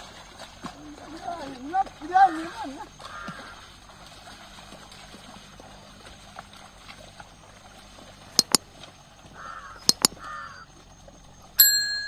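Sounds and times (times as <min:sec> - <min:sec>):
sharp metallic dings: 0:08.4 - 0:08.6, 0:09.9 - 0:10.2, 0:11.6 - 0:12.0.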